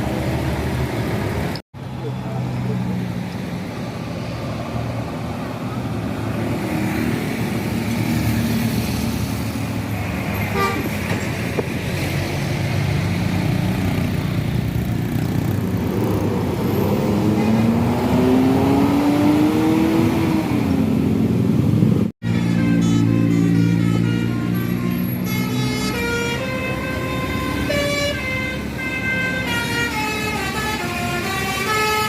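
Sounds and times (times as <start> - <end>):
road noise: 0.0 - 32.0
bus engine running: 20.5 - 32.0.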